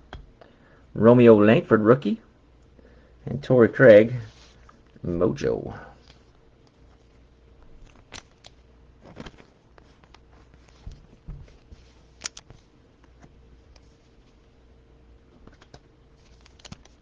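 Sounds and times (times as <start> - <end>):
card packaging clicks and rustles: 7.7 - 12.6, 15.4 - 17.0
soft thumps of cards: 10.4 - 12.6.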